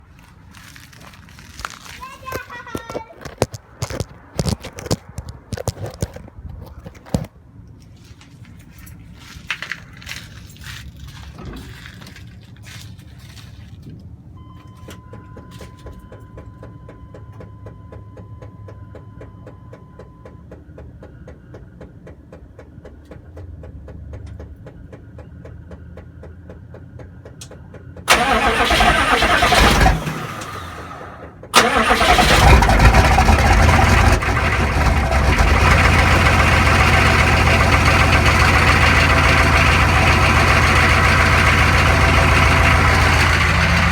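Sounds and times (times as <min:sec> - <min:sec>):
diesel engine cranking and running: 0:24.5 - 0:43.9.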